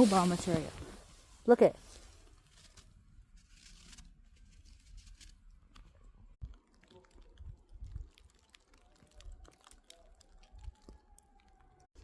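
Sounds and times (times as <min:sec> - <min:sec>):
wet snow crackling: 0:00.0 - 0:02.8.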